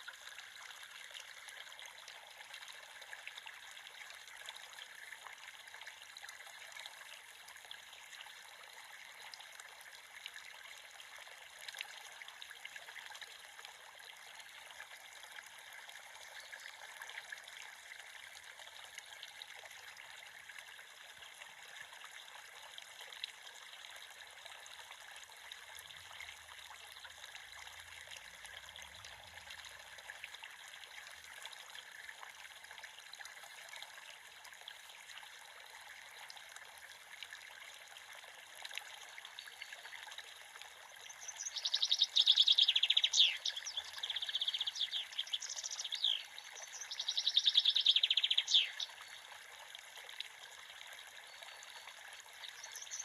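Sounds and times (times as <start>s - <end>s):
creek water trickling: 0.0s - 53.0s
bird singing trills: 41.2s - 48.9s, 52.5s - 53.0s.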